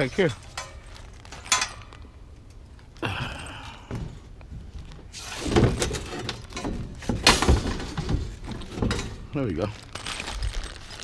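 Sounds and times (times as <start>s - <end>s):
metal bed frame scraping and clanking: 5.1s - 9.2s.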